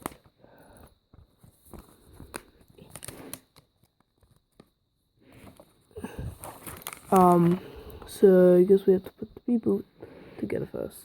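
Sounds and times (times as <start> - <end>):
paper and packaging handling: 1.2 - 4.7, 5.3 - 7.8.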